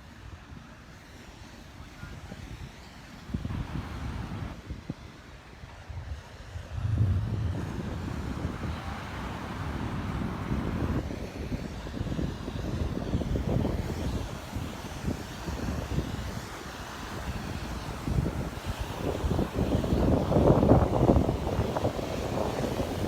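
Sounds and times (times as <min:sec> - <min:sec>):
wind buffeting microphone: 0:06.5 - 0:11.0
surf washing on beach: 0:06.6 - 0:23.0.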